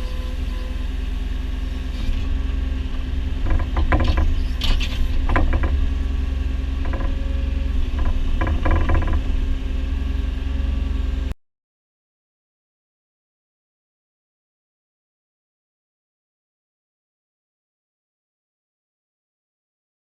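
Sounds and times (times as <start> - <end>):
excavator engine running: 0.0 - 11.4.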